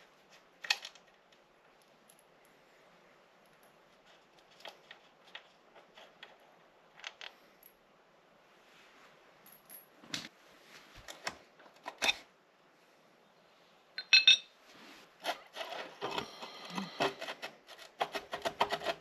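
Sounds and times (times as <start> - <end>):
metal tools clinking: 14.0 - 14.5.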